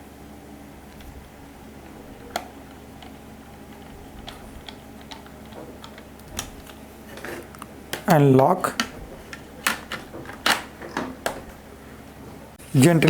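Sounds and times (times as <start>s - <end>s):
steady low hum: 0.0s - 13.0s
clicks and taps of laptop parts: 2.3s - 8.1s.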